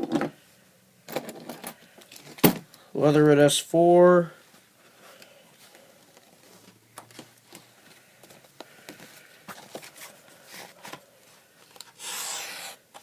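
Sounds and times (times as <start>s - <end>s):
blade cutting paper: 11.8s - 13.0s.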